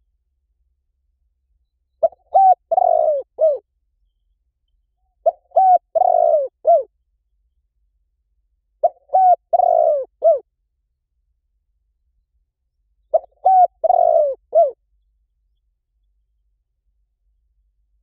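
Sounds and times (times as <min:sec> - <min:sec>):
dove cooing: 0:02.0 - 0:03.6, 0:05.2 - 0:06.9, 0:08.8 - 0:10.4, 0:13.1 - 0:14.8.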